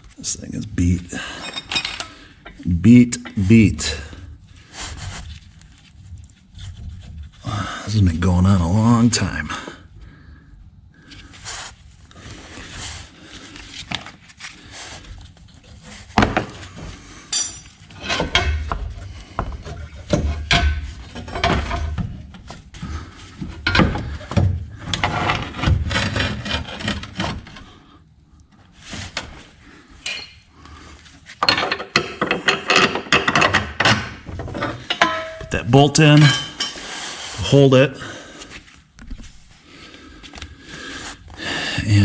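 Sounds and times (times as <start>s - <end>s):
metal tools clanking and scraping: 1.2s - 2.6s, 16.2s - 22.3s, 23.4s - 27.7s, 30.0s - 30.5s, 31.4s - 37.0s.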